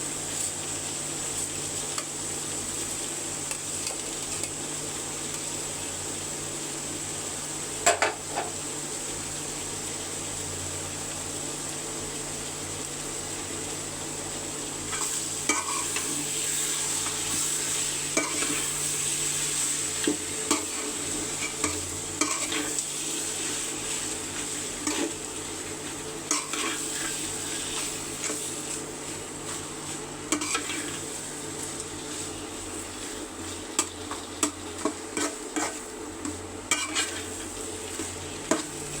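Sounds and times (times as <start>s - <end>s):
chicken frying in oil: 0.0s - 39.0s
spoon scraping pot: 33.8s - 35.8s, 36.7s - 37.3s.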